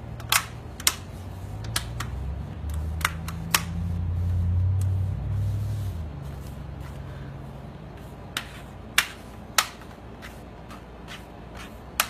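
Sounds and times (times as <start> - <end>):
low handling rumble: 0.0 - 8.3.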